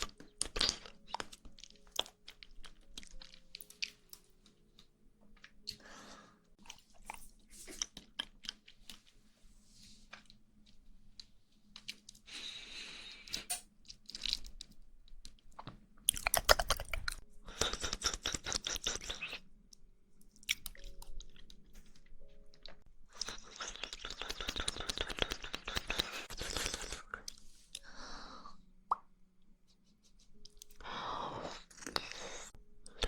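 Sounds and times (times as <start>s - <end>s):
wet chewing squelching: 15.6s - 19.4s
mouth smacks: 16.1s - 19.3s.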